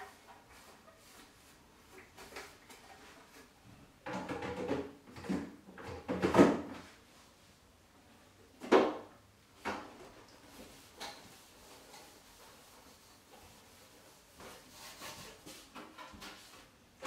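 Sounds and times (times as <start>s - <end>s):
handling scrapes and knocks: 9.6s - 17.0s.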